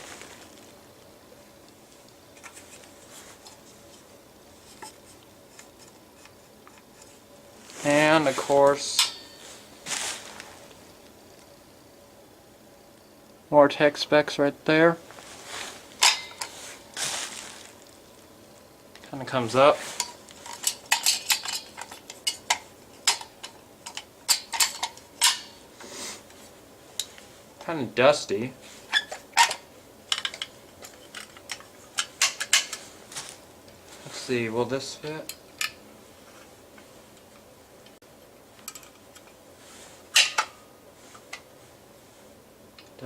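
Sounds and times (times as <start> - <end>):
fire alarm parts clicking and tapping: 16.0 - 16.6, 20.0 - 25.6, 28.9 - 32.8, 38.6 - 39.4.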